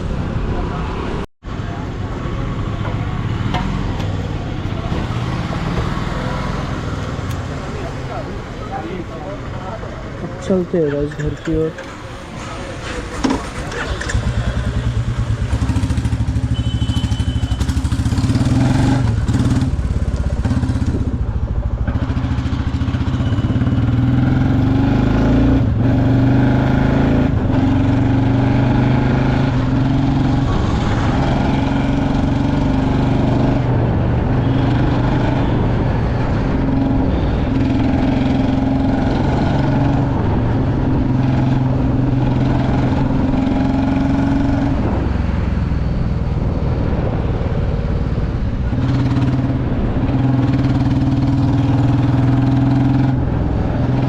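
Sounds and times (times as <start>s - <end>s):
motorcycle engine running: 12.7s - 31.1s.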